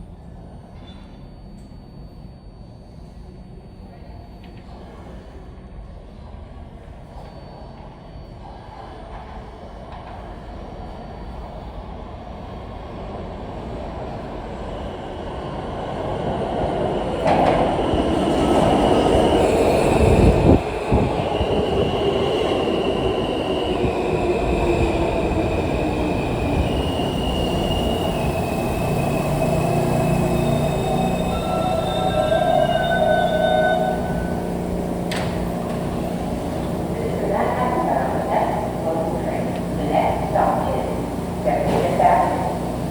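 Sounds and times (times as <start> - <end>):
subway train rumbling: 0.0 - 42.9
high squealing tones: 26.3 - 36.6.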